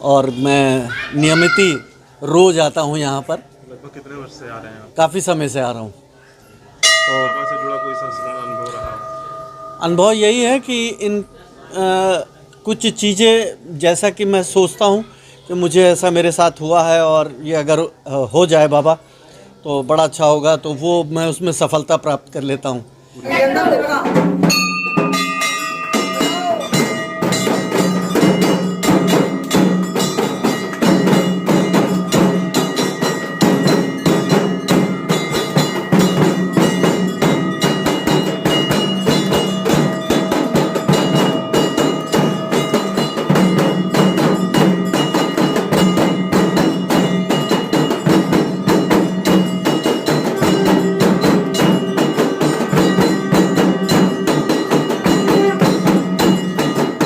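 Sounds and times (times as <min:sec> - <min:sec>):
percussion: 0:00.0 - 0:03.6, 0:06.4 - 0:57.0
brass bells ringing rapidly: 0:06.8 - 0:11.9, 0:24.4 - 0:57.0.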